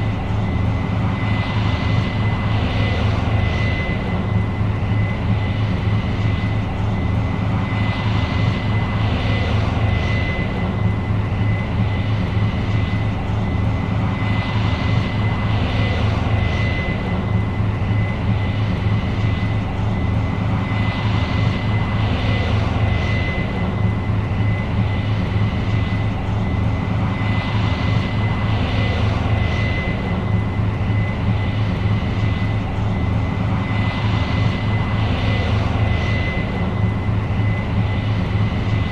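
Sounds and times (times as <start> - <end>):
combine harvester drone: 0.0 - 38.9.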